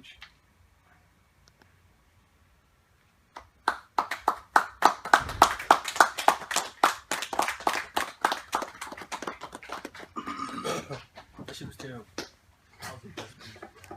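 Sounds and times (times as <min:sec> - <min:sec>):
audience clapping: 0:03.3 - 0:10.2, 0:11.0 - 0:12.4, 0:13.0 - 0:13.9.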